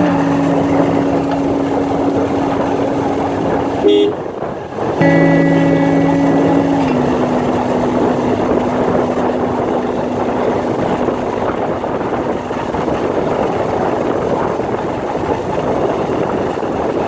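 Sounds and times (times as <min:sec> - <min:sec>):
steady hum: 0:00.0 - 0:15.0
continuous rushing noise: 0:00.0 - 0:17.0
vehicle horn: 0:03.8 - 0:04.3.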